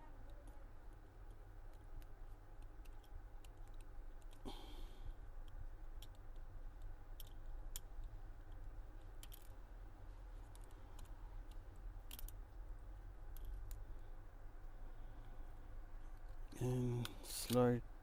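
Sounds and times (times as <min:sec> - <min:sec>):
low steady hum: 0:00.0 - 0:18.0
small sharp clicks of phone parts: 0:09.1 - 0:09.6, 0:10.5 - 0:12.4.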